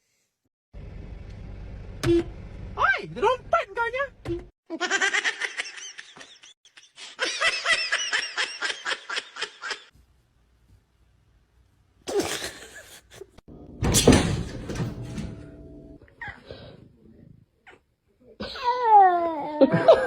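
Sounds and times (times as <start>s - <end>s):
high-pitched laughter: 19.4s - 20.0s.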